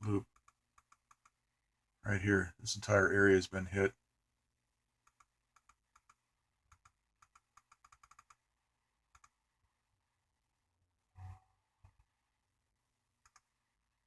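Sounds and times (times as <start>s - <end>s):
computer mouse clicking: 0.3s - 1.4s, 5.0s - 8.4s, 9.1s - 9.4s, 13.2s - 13.6s.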